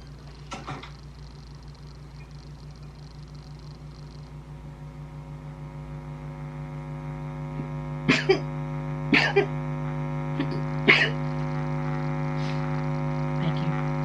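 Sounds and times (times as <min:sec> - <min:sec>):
steady low hum: 0:00.0 - 0:14.0
person sneezing: 0:08.1 - 0:08.5, 0:09.1 - 0:09.6, 0:10.4 - 0:11.2.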